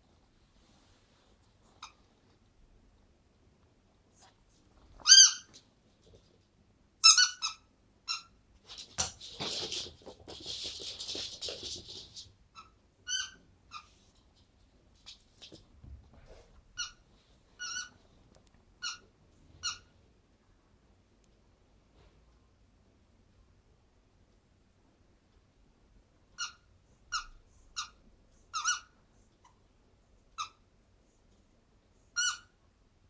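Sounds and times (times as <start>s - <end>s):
squeaky toy squeaks: 5.0s - 5.5s, 7.0s - 8.3s, 12.6s - 13.9s, 26.4s - 28.9s, 32.2s - 32.5s.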